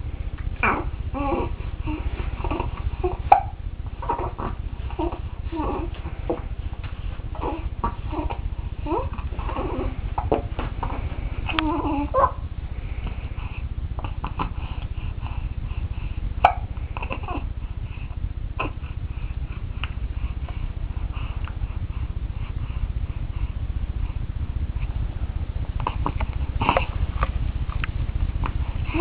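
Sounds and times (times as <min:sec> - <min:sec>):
steady low hum: 0:00.0 - 0:29.0
soft baby noises: 0:00.6 - 0:03.4, 0:04.0 - 0:06.1, 0:07.3 - 0:10.0, 0:10.8 - 0:12.4.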